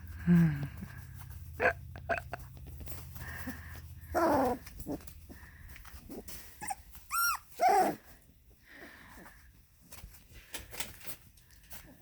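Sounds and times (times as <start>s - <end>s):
puppy growling: 3.4s - 8.2s
puppy yelping: 6.6s - 8.0s.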